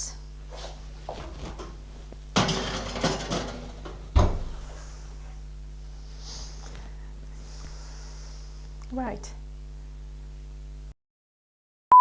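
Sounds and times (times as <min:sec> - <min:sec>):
oven door thud: 0:01.1 - 0:04.9
cake tin rattling on oven rack: 0:01.2 - 0:04.7.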